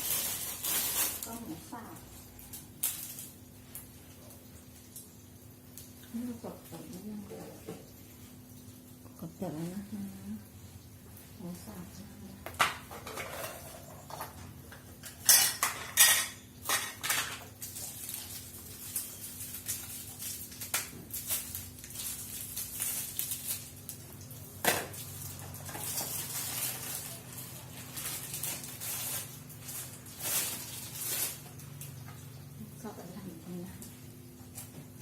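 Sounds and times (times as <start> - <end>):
utensils clattering on countertop: 12.4 - 23.8, 24.6 - 32.2.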